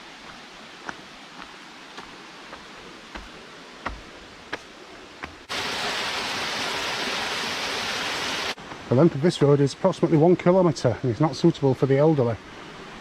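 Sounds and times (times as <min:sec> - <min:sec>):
footsteps on a path: 0:00.0 - 0:05.5
falling water rushing: 0:00.0 - 0:10.5
low rush of water: 0:00.0 - 0:13.0.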